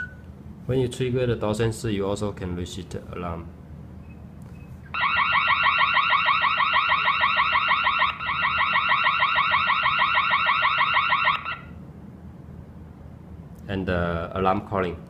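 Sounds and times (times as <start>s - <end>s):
alarm siren warbling: 4.9s - 11.8s.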